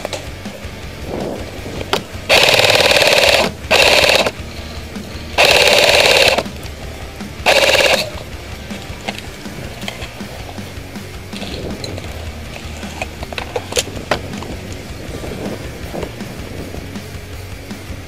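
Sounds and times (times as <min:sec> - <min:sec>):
gearbox whine: 0:00.0 - 0:18.0
airsoft gun full-auto bursts: 0:02.3 - 0:04.4, 0:05.4 - 0:06.5, 0:07.4 - 0:08.2.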